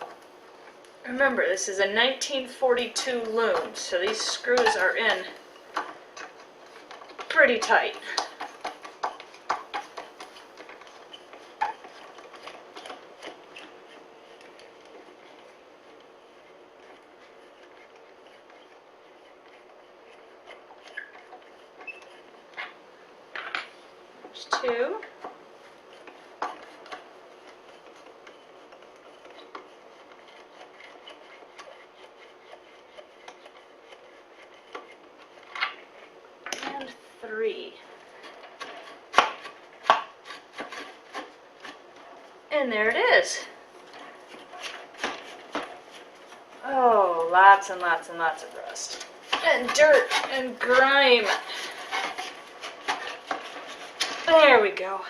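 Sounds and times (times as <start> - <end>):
screw scraping in wood: 24.3 - 37.0, 38.1 - 42.2, 43.2 - 46.6, 47.6 - 54.6.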